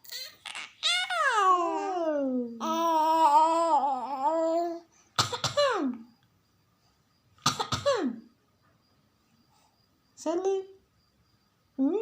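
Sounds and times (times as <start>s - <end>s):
child fake coughing: 5.2s - 6.0s, 7.5s - 8.2s.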